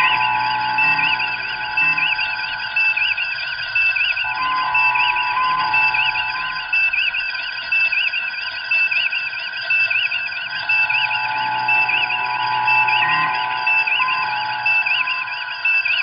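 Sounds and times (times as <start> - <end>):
layered synthetic tones: 0.0 - 7.1, 10.4 - 16.0
warbling chirp: 0.0 - 8.0, 9.6 - 16.0.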